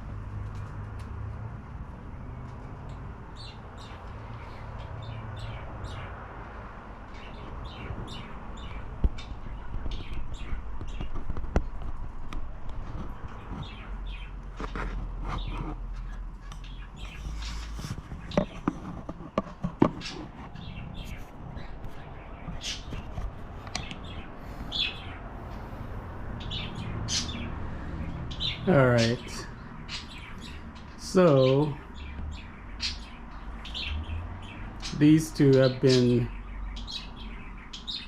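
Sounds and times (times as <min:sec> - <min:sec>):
cockatiels chirping: 0:20.0 - 0:27.5, 0:28.3 - 0:38.0.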